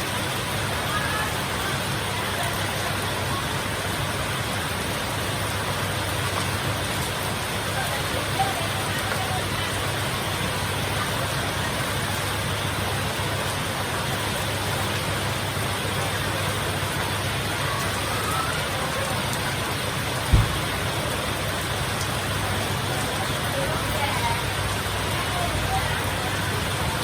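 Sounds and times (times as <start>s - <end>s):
heavy rain falling: 0.0s - 27.0s
short low thump: 20.3s - 20.9s.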